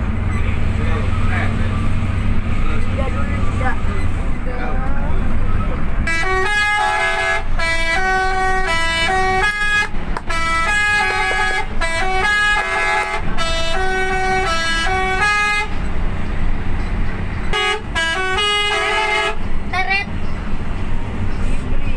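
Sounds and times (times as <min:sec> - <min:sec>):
bus engine rumble: 0:00.0 - 0:21.9.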